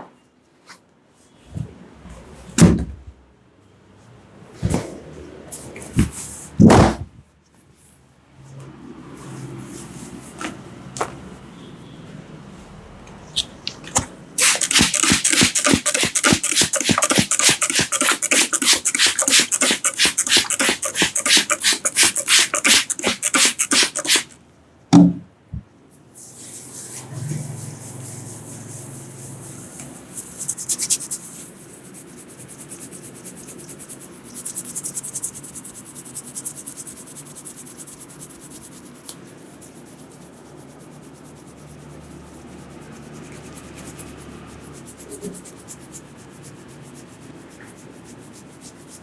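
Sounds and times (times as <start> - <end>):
loud thump: 6.6 - 7.1.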